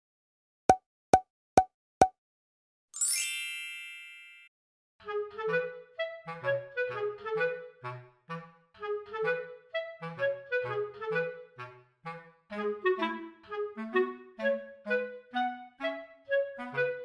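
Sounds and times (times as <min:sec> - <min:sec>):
woodwind notes: 0:05.0 - 0:17.0.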